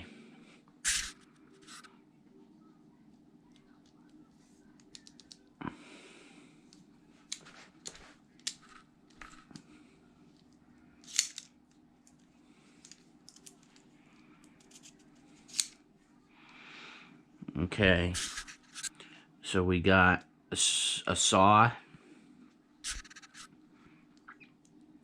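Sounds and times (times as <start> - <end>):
multitool metal clicks and snaps: 11.0 - 11.5.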